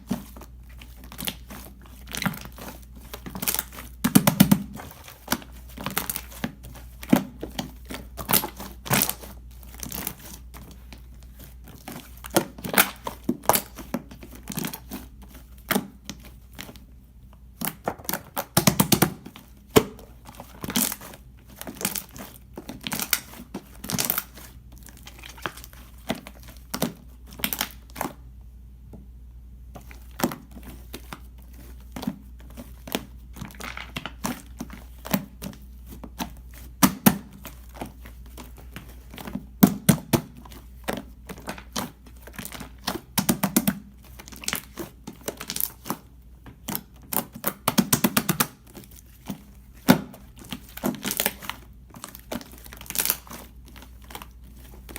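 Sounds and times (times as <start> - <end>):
crinkling and crackling clicks: 29.7 - 54.9.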